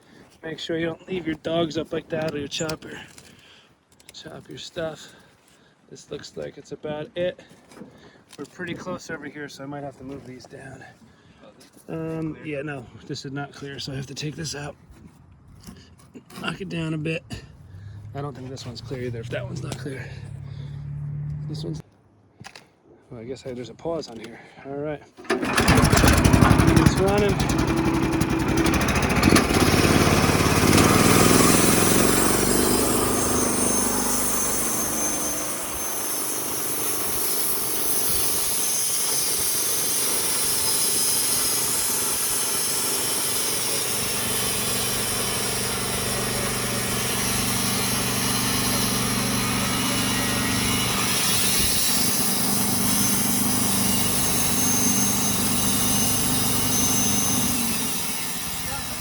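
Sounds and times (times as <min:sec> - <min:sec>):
sawmill engine droning: 0:17.6 - 0:21.8, 0:25.2 - 0:59.0
saw blade hissing: 0:25.2 - 0:59.0.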